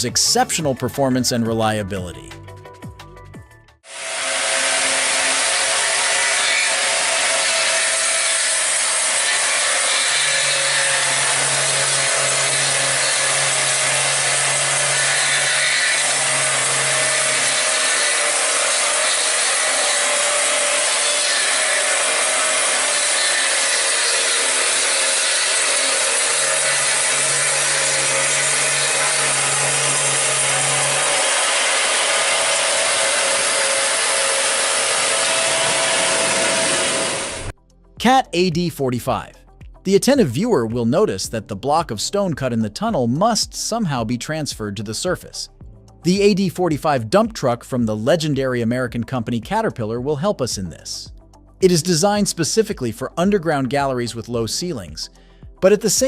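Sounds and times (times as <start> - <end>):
machine saw cutting: 3.8 - 37.6.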